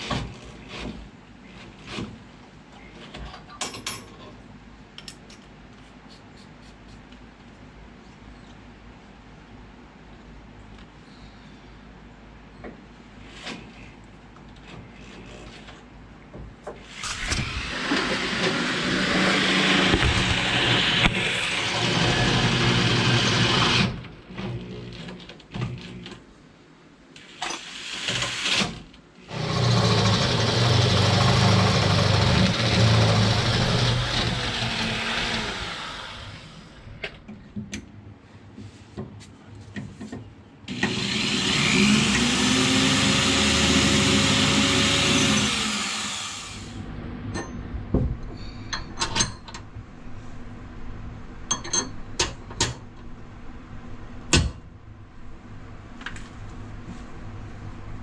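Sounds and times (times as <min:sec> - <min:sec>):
electric drill boring steel: 0:16.9 - 0:24.0, 0:27.4 - 0:36.8, 0:40.7 - 0:46.8.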